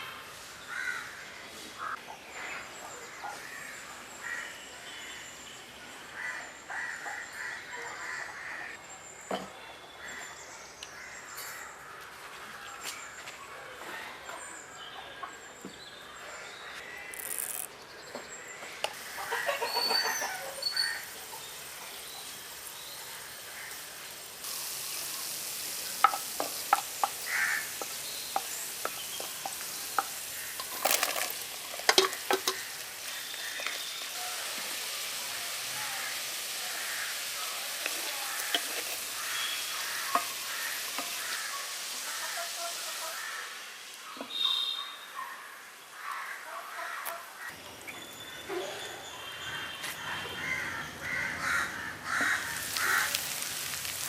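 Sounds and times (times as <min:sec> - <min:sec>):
birds chirping: 0:12.6 - 0:42.2, 0:46.8 - 0:54.0
food sizzling in hot oil: 0:19.0 - 0:44.7, 0:52.0 - 0:54.0
utensil clinking against pan: 0:29.4 - 0:32.7.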